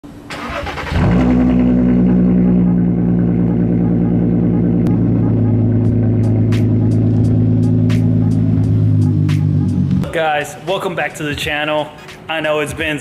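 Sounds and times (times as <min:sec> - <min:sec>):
car engine starting and idling: 0:00.1 - 0:10.1.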